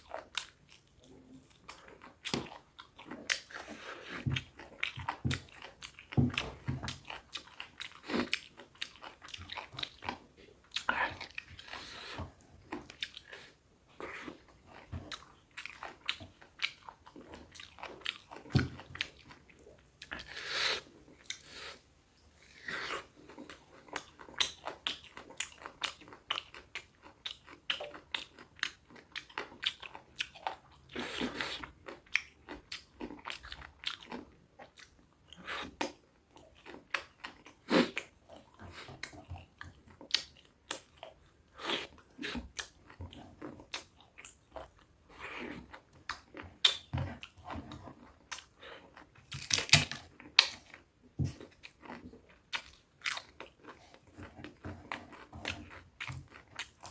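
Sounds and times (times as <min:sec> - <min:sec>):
person chewing crunchy food: 0:00.0 - 0:21.8, 0:22.4 - 0:56.9.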